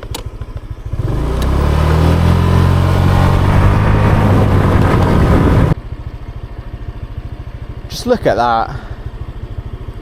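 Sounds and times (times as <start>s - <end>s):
motorbike engine: 0.0s - 10.0s
wind rush: 2.6s - 5.8s.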